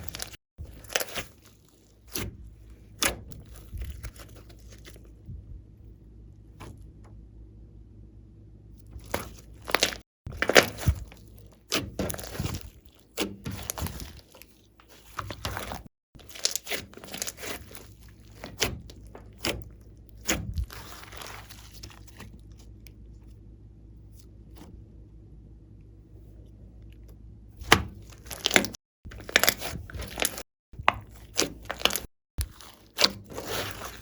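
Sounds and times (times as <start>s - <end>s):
slime squished by hand: 0.0s - 5.1s, 8.8s - 23.2s, 27.6s - 34.0s.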